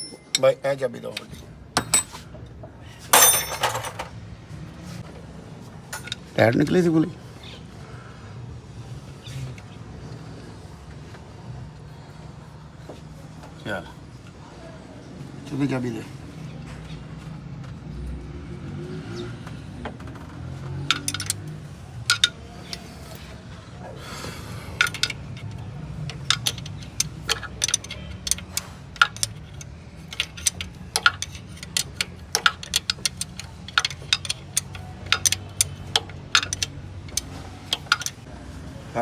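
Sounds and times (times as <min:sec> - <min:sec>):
metal hand tools clinking: 0:00.0 - 0:00.6, 0:03.2 - 0:04.1, 0:20.8 - 0:23.2, 0:24.7 - 0:38.3.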